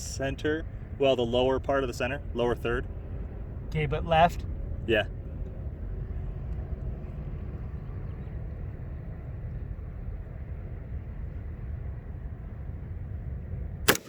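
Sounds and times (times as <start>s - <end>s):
low outdoor background rumble: 0.0s - 14.0s.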